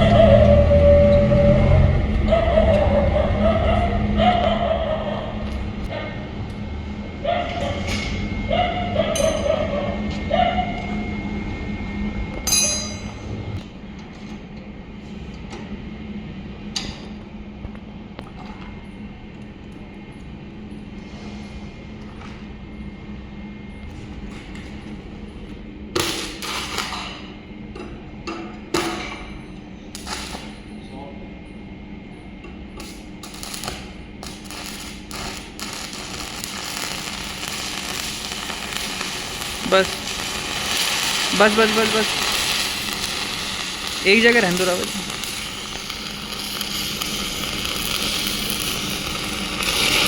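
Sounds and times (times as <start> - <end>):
welding machine humming: 0.0 - 30.8, 31.5 - 50.0
metallic ring: 9.1 - 9.7, 12.4 - 13.3.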